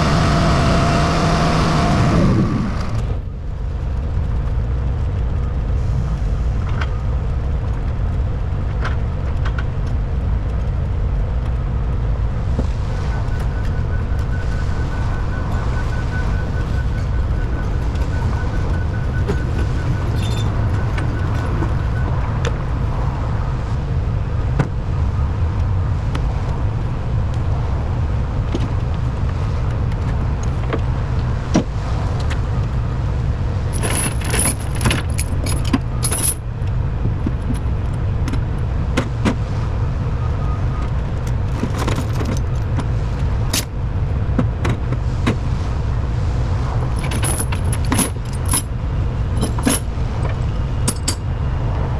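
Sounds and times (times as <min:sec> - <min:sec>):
truck engine idling: 0:13.1 - 0:24.4
metal hardware clinking: 0:15.5 - 0:23.2.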